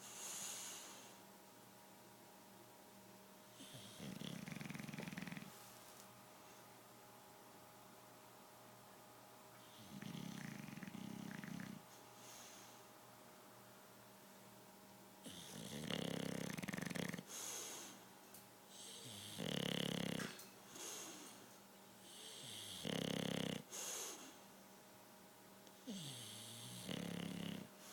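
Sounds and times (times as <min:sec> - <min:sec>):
dog snoring: 0:03.5 - 0:05.6, 0:09.6 - 0:12.8, 0:15.2 - 0:18.0, 0:18.7 - 0:21.4, 0:22.0 - 0:24.4, 0:25.7 - 0:27.9.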